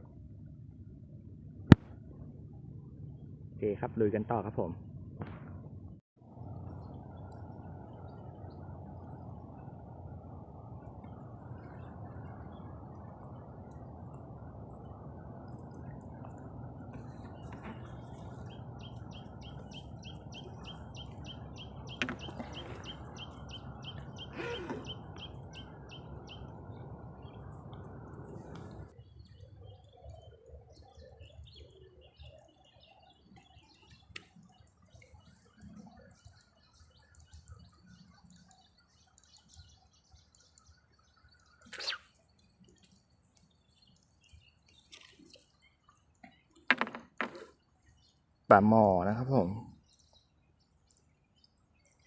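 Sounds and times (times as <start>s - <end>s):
small bird chirping: 17.0s - 34.3s, 35.7s - 42.6s.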